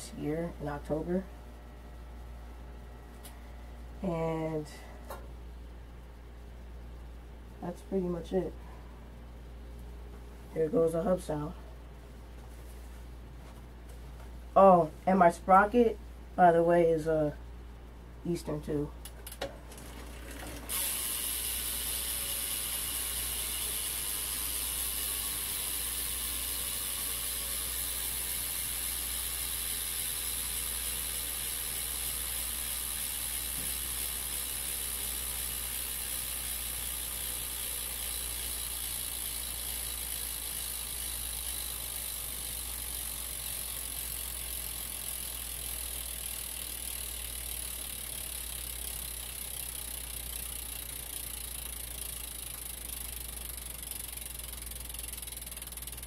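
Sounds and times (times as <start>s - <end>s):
bike hub freewheel clicking: 19.0s - 56.0s.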